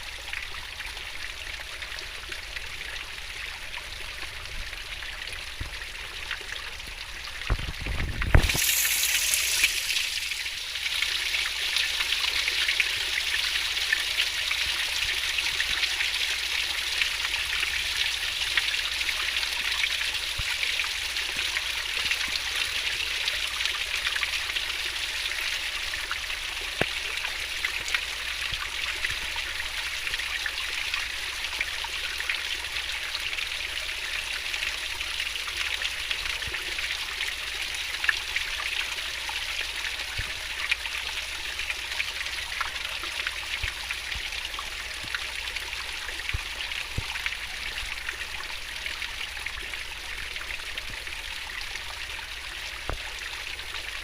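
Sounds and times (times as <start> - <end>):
water splashes and droplets: 6.8 - 16.2.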